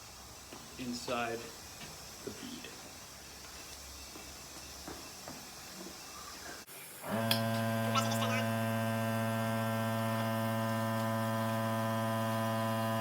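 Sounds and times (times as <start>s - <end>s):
air compressor motor humming: 7.0s - 13.0s.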